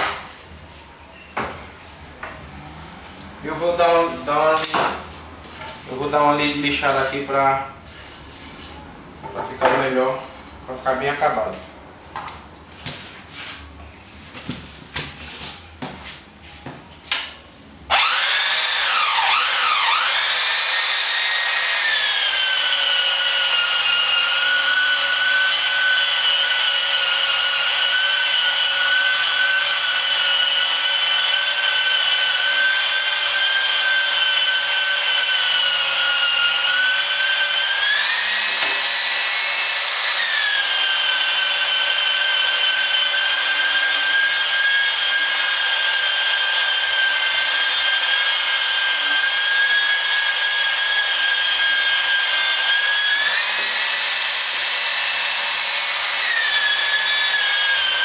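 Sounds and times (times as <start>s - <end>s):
electric sander whining on wood: 17.9s - 58.0s.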